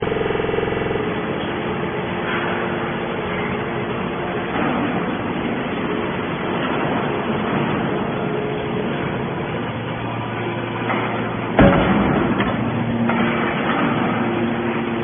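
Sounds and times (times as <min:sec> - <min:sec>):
faint constant hum: 0:00.0 - 0:15.0
scrap metal baler running: 0:00.0 - 0:15.0.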